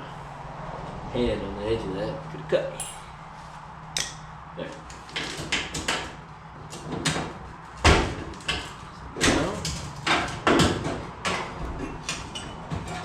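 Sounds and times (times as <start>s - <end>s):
sheet metal knocks and clunks: 5.1s - 13.0s.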